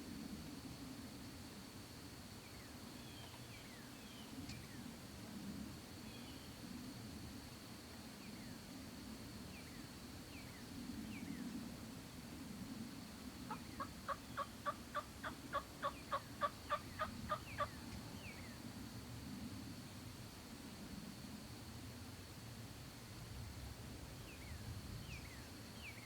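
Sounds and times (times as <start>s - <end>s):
wild turkey yelping: 13.5s - 17.9s.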